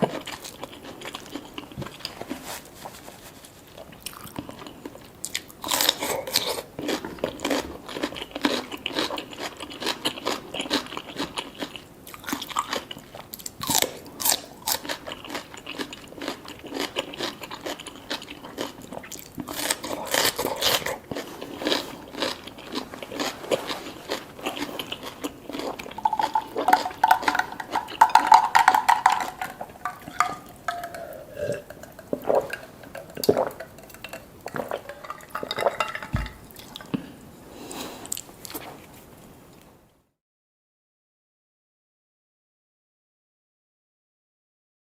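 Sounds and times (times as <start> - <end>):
biting and chewing: 3.7 - 33.4.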